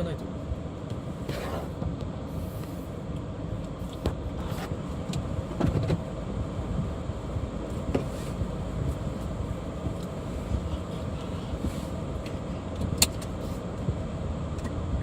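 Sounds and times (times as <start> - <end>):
car engine and road rumble: 0.0 - 15.0.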